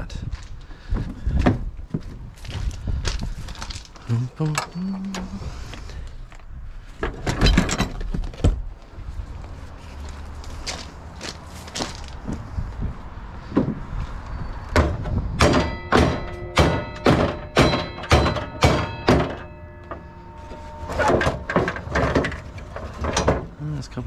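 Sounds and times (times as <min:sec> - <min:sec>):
hammer striking metal: 0:15.4 - 0:22.6.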